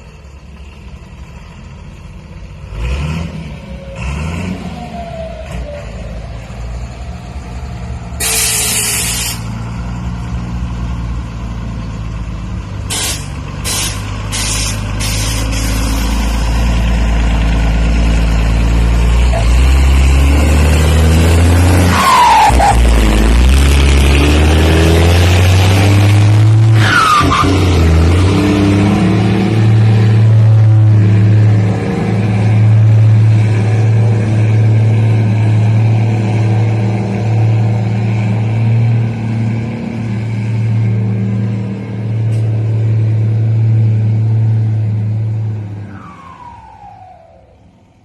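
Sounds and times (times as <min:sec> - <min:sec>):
bus diesel engine rumbling: 0:00.0 - 0:48.0
short falling whine: 0:45.8 - 0:48.0.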